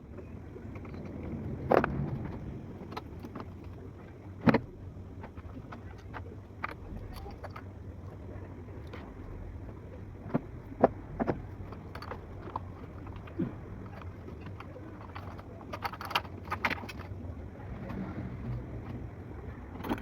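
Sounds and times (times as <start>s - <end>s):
steady low hum: 0.0s - 20.0s
tools clinking and knocking: 10.3s - 17.2s, 17.8s - 20.0s.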